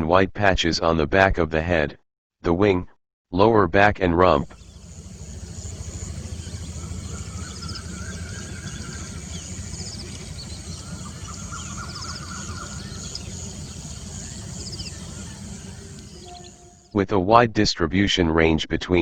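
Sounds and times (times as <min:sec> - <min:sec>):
steady low rumble: 0:04.3 - 0:17.0
small birds chirping: 0:04.5 - 0:17.0.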